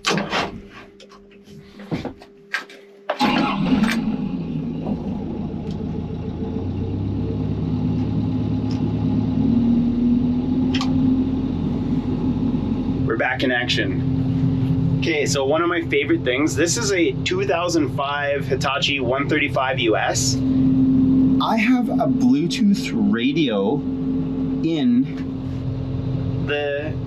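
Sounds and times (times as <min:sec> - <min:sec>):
excavator diesel engine: 0:00.0 - 0:27.0
steady low tone: 0:03.2 - 0:27.0
cab control clicks: 0:10.7 - 0:11.0.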